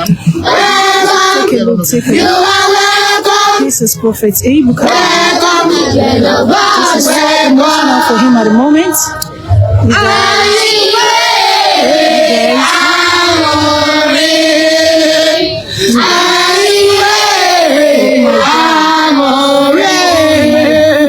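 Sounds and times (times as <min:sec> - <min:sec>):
voices singing slow song: 0:00.0 - 0:21.0.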